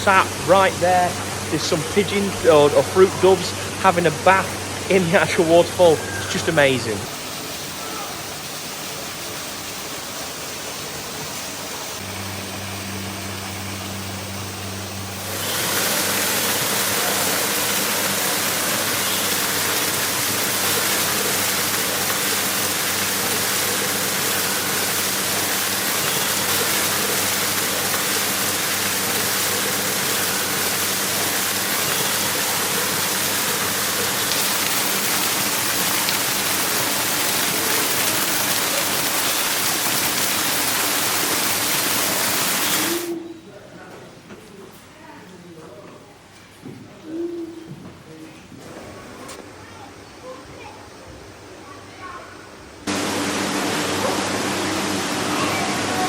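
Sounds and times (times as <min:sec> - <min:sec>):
waterfall rushing and splashing: 0:00.0 - 0:12.4, 0:15.1 - 0:43.1, 0:52.9 - 0:56.0.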